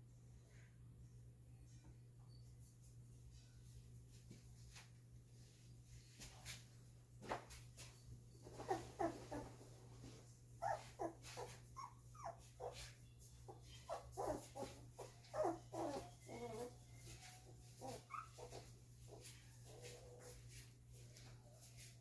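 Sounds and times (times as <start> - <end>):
puppies whimpering and crying: 8.5 - 9.6, 10.6 - 20.4.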